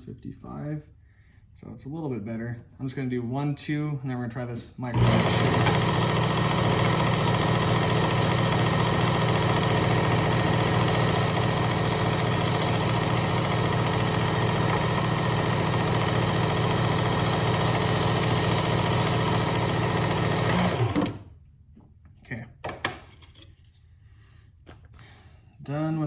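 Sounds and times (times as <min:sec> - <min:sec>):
electric knife sharpener running: 0:05.0 - 0:21.3.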